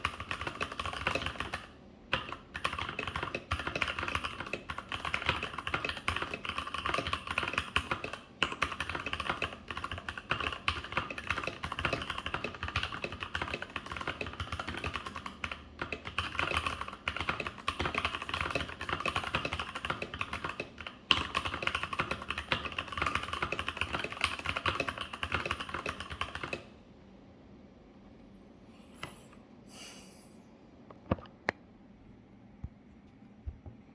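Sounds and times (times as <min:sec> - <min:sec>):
fast typing on mechanical keyboard: 0:00.0 - 0:26.7.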